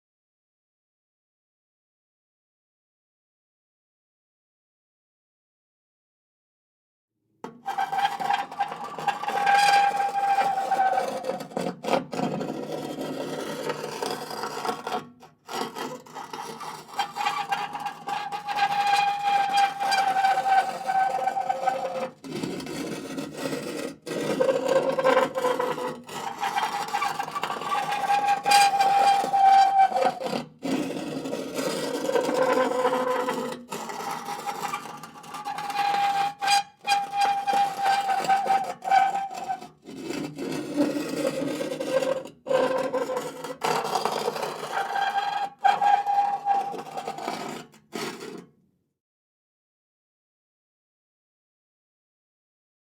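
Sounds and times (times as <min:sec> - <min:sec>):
metal scraping on rusty metal: 0:07.7 - 0:48.5.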